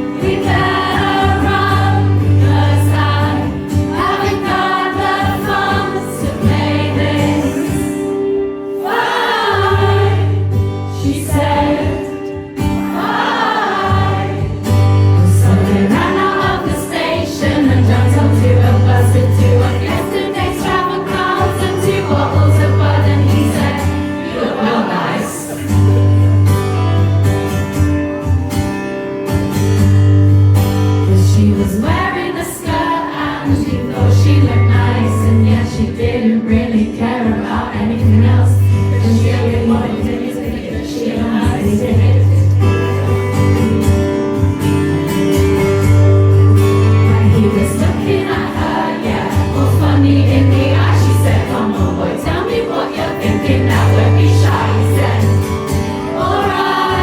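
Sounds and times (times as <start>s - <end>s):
crowd singing together: 0.0s - 26.6s, 31.0s - 57.0s
live band music: 41.2s - 57.0s.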